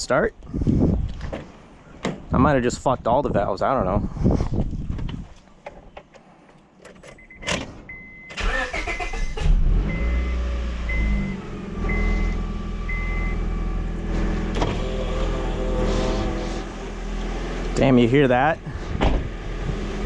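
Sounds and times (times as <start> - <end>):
car engine starting and idling: 7.0 - 20.0
high beep: 9.2 - 13.4.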